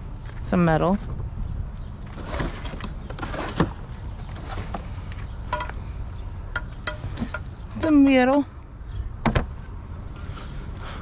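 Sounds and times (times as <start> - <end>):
steady low rumble: 0.0 - 2.2
rustling of junk: 2.0 - 5.8.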